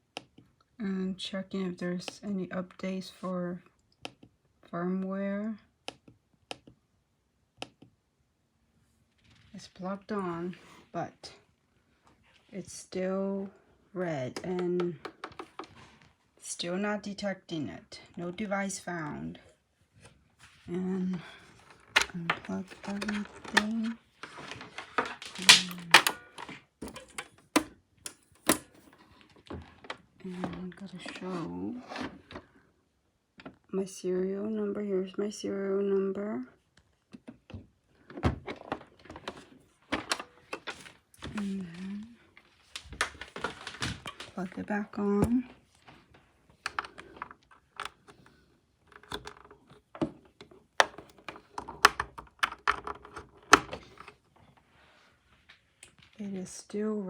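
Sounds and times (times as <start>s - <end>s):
plastic cords clicking: 21.6s - 28.8s, 46.6s - 54.1s.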